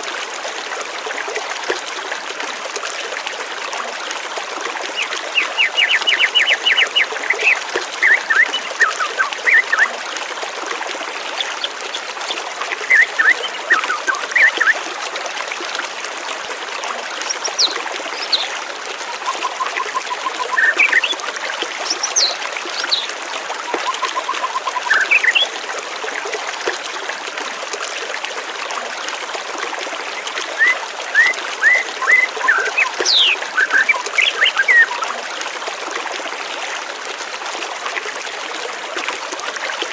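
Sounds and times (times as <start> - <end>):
flowing water: 0.0 - 39.9
small birds chirping: 17.2 - 18.6, 19.2 - 21.2, 21.8 - 25.5, 30.6 - 35.1.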